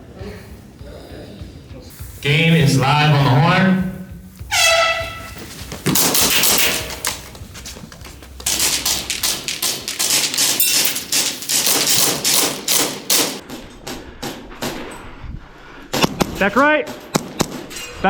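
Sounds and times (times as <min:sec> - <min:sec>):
toy guns firing sharp clicks: 0:06.0 - 0:07.2, 0:08.5 - 0:13.4.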